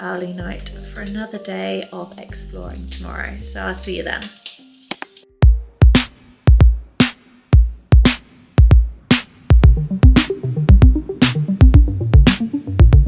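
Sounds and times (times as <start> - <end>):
electronic music with drum-machine beat: 5.4 - 13.0
bass line: 9.6 - 13.0.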